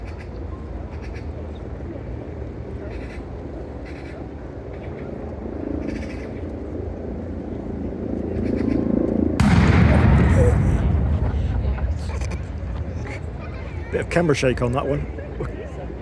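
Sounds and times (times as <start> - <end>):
steady low rumble: 8.9 - 16.0.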